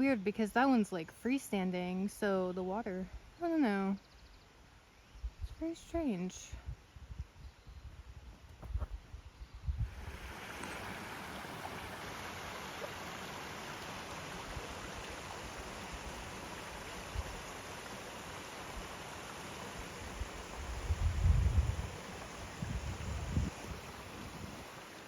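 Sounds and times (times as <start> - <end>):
wind buffeting microphone: 6.7 - 10.3, 20.2 - 24.7
stream water flowing: 9.8 - 25.0.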